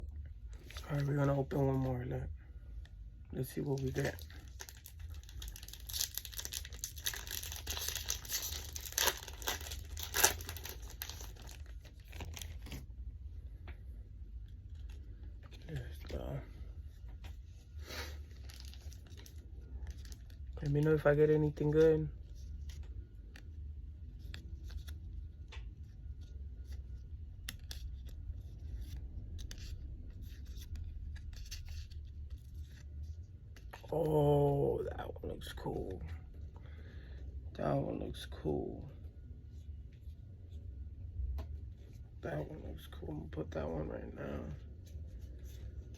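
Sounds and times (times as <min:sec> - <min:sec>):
low steady hum: 0:00.0 - 0:45.9
foil pack crinkling: 0:03.5 - 0:12.8, 0:18.0 - 0:21.1
foil ripping: 0:04.1 - 0:12.4.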